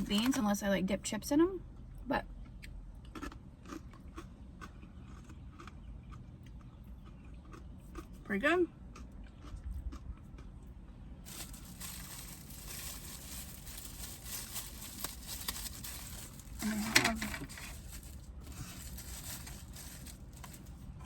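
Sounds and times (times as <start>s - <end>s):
food packaging crinkling: 11.2s - 21.0s.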